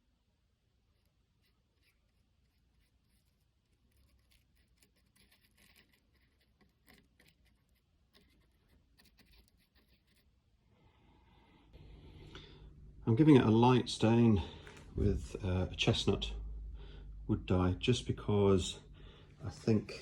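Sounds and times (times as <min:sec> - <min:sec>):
faint scratching and rubbing: 0:00.8 - 0:12.2, 0:18.1 - 0:20.0.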